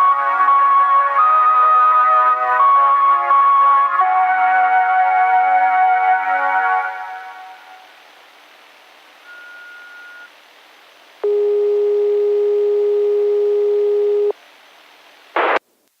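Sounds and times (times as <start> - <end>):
radio broadcast hiss: 7.3 - 11.3, 14.0 - 16.0
burst of static: 14.0 - 16.0.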